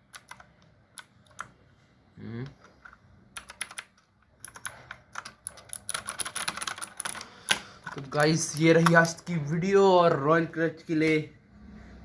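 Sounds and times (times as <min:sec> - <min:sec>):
mechanical keyboard typing: 0:00.0 - 0:01.6, 0:02.7 - 0:09.2.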